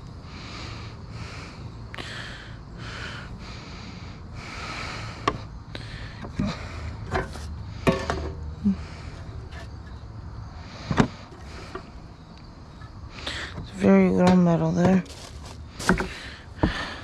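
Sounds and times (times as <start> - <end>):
person breathing heavily: 0.1 - 9.8, 10.4 - 13.6, 15.5 - 17.0
items knocking and clunking: 6.2 - 8.5, 10.8 - 11.9, 13.5 - 17.0.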